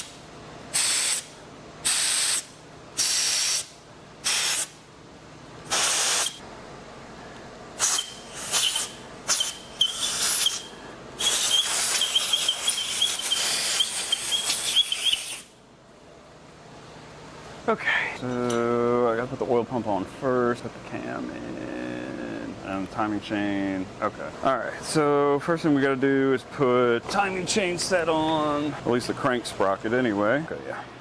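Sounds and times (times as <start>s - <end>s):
compressed-air blow gun blasting: 0.7s - 4.8s, 5.7s - 6.4s, 7.8s - 15.5s
nozzle whistle: 0.8s - 3.7s, 7.8s - 15.5s.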